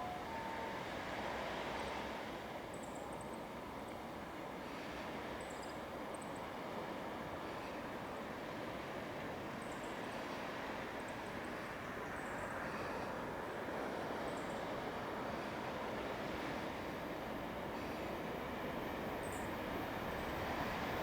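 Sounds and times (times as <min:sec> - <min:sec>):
train rumbling: 0:00.0 - 0:02.2, 0:15.1 - 0:21.0.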